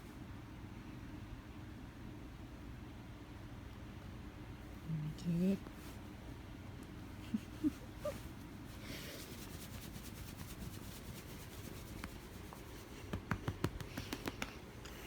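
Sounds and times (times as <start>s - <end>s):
light scratches or taps: 9.3s - 15.0s.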